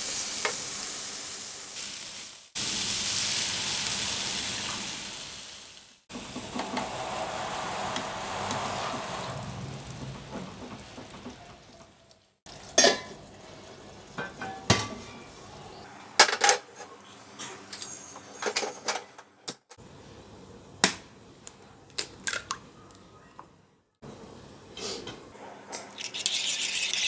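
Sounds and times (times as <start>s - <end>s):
utensils clinking against dishes: 12.7s - 13.2s, 16.2s - 19.2s.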